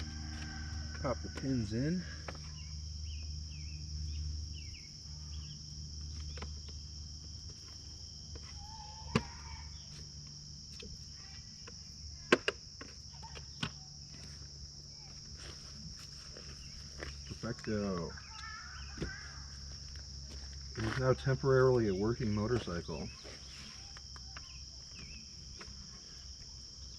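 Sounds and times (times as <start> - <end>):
low hum: 0.0 - 12.3
high insect chirring: 0.0 - 26.9.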